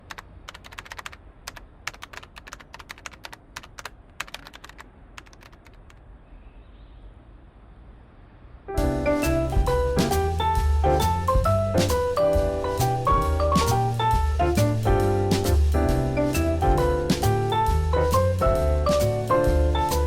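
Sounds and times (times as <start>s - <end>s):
computer keyboard typing: 0.0s - 6.0s.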